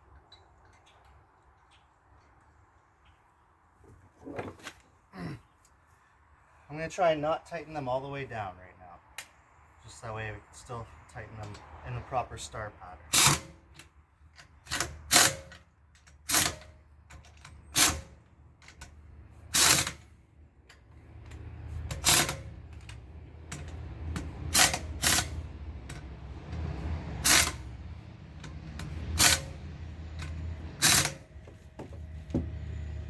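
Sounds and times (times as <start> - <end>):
impact wrench bursts: 13.1 - 13.8, 19.5 - 20.0, 21.9 - 22.9, 23.6 - 25.5, 27.2 - 27.8, 28.4 - 31.4.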